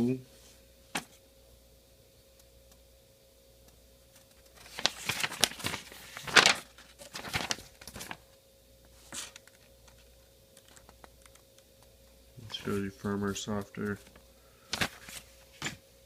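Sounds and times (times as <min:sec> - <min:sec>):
paper rustling and crinkling: 0:04.2 - 0:08.2, 0:09.0 - 0:11.4, 0:12.4 - 0:15.8.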